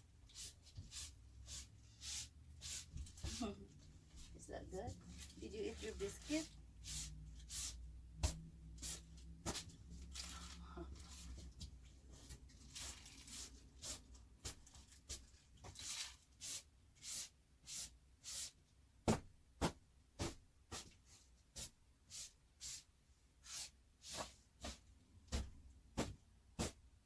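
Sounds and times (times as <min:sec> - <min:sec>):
brush swishing through dog fur: 0:00.3 - 0:11.5, 0:20.2 - 0:24.8.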